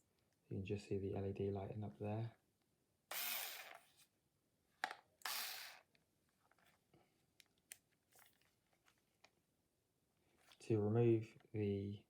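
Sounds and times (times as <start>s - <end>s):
cordless screwdriver motor spinning: 3.1s - 3.9s, 5.2s - 5.9s.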